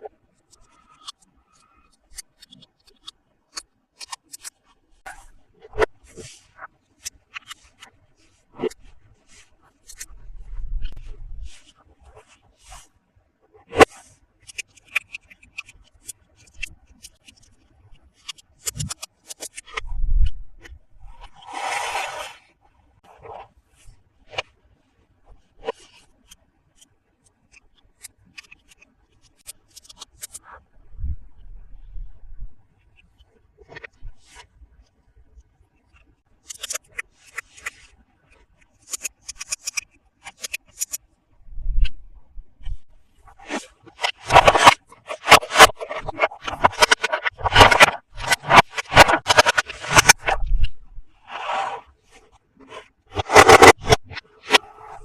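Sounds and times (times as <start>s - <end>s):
toy packaging being scraped: 21.2s - 22.5s, 43.3s - 50.5s, 53.1s - 55.0s.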